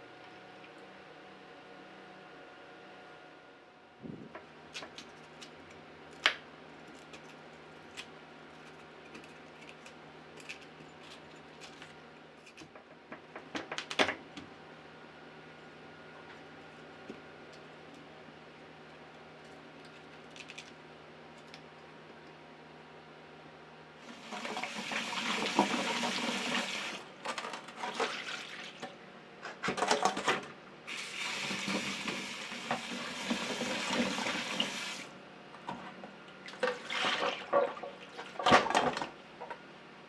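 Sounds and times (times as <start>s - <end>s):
running water splashing in a sink: 24.1s - 27.0s, 27.8s - 28.8s, 30.9s - 35.1s, 36.6s - 38.9s.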